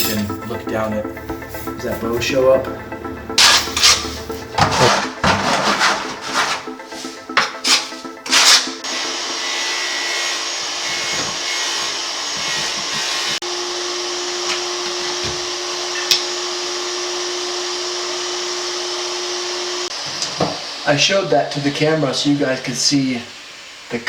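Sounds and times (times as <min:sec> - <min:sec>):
knocks and scrapes: 0:03.4 - 0:08.8
small electric motor whirring: 0:08.3 - 0:20.8.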